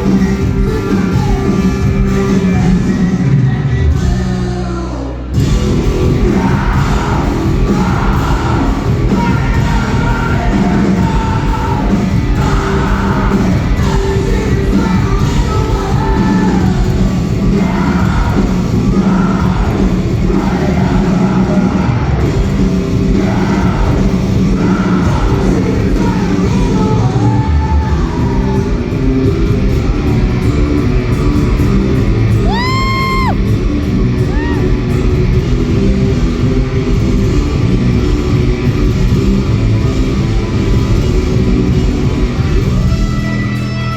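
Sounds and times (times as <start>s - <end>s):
live rock band playing: 0.0s - 43.9s
person singing: 6.0s - 22.3s.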